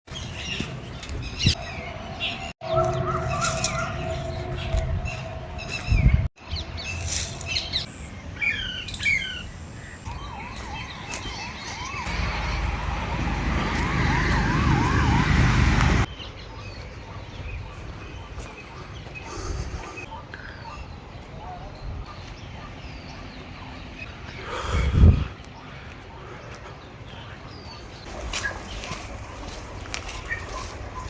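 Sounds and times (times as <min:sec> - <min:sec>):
birds chirping and calling: 0:00.1 - 0:31.0
low rumble of outdoor noise: 0:03.3 - 0:31.0.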